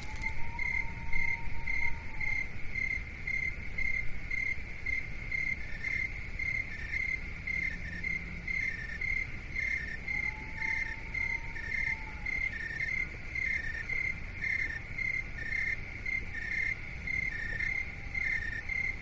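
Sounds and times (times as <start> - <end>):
crickets chirping high: 0.0 - 19.0.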